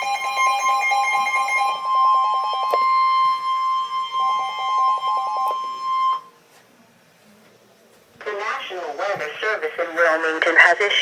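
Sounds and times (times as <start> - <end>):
steady warning alarm tone: 0.0 - 6.4.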